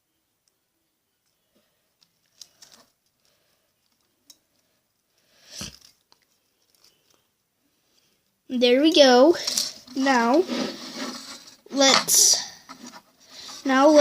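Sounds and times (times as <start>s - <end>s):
light clicks and rustles of tape: 1.2s - 7.4s.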